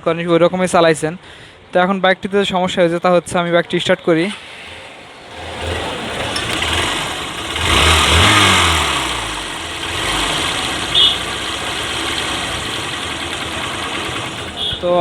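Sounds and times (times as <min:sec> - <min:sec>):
rattly clicking engine noise: 0:03.5 - 0:15.0
motorcycle engine revving and idling: 0:03.9 - 0:15.0.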